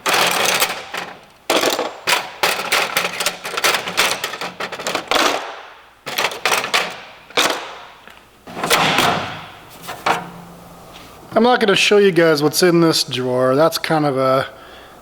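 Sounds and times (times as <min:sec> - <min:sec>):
metal hand tools clanking: 0:00.0 - 0:10.6.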